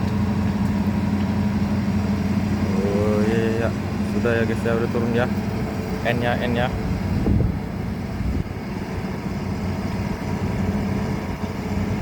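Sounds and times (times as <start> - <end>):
excavator diesel engine running: 0.0 - 12.0.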